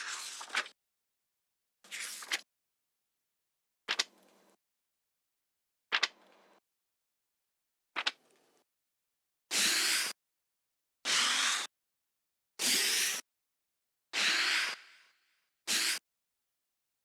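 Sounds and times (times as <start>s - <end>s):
book pages turning: 0.0s - 0.7s.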